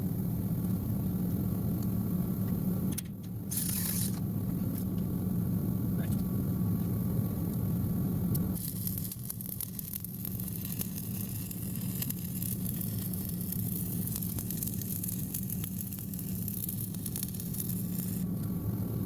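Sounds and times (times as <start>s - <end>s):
welding arc crackling: 2.3s - 4.8s, 8.2s - 18.8s.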